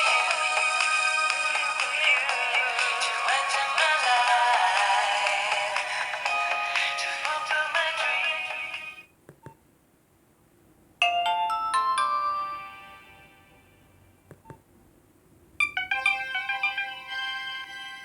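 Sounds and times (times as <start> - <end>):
phone ringtone: 0.0 - 9.1, 11.0 - 13.6, 15.6 - 18.0
chime-like notes: 11.0 - 13.8.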